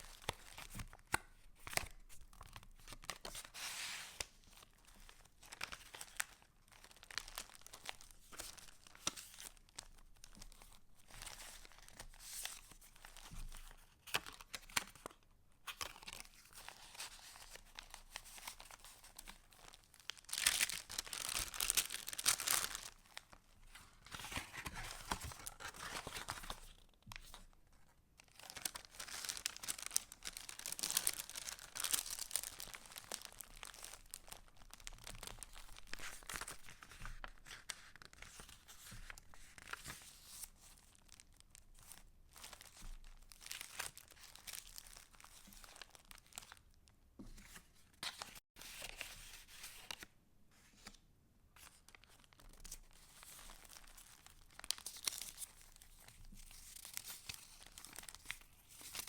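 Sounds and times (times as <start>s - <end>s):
paper pages rustling and crinkling: 0.0s - 46.6s, 47.2s - 51.0s, 51.6s - 59.0s.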